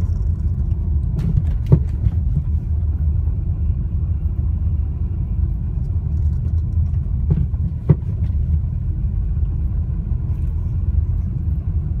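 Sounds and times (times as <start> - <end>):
road rumble: 0.0 - 12.0
suspension knocks: 6.2 - 8.5.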